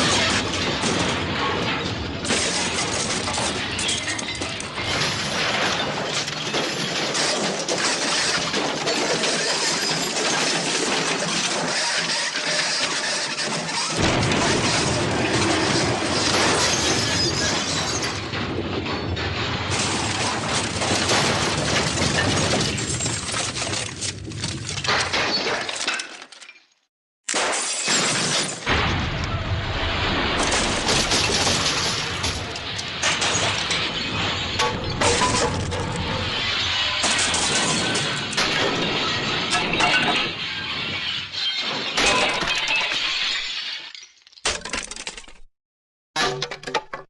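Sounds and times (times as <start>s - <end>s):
glass smashing and shattering: 0.0s - 29.0s, 30.1s - 45.5s.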